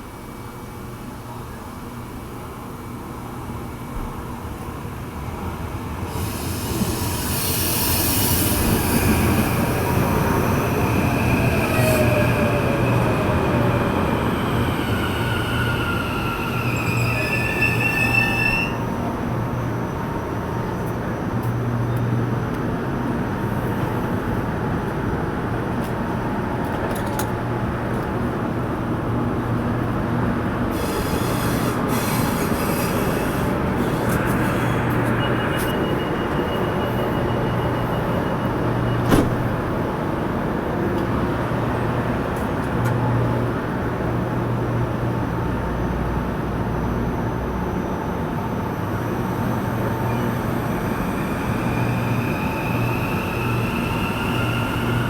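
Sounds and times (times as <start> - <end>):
train wheels squealing on rails: 6.0 - 22.2, 30.6 - 40.3, 47.8 - 55.0.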